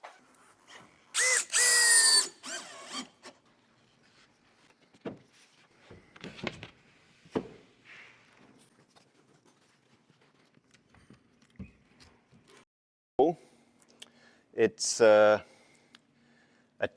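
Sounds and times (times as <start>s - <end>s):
power drill driving a screw: 1.2s - 3.3s.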